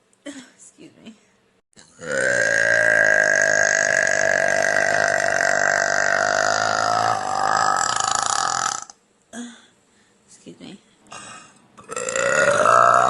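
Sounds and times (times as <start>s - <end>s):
woman burping: 1.8s - 9.7s, 11.1s - 13.0s.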